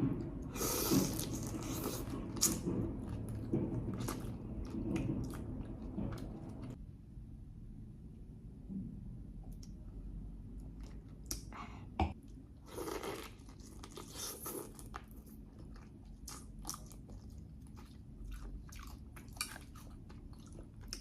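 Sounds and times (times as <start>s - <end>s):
person chewing crunchy food: 0.5s - 6.8s, 12.2s - 21.0s.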